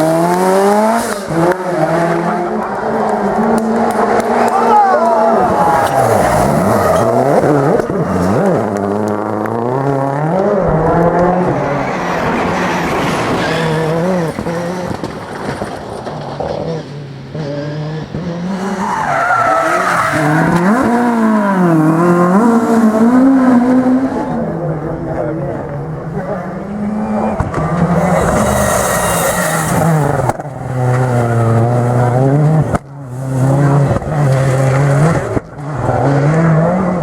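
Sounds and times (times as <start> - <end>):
rally car engine revving: 0.0 - 37.0
tyre squeal: 13.0 - 14.4, 27.6 - 31.2.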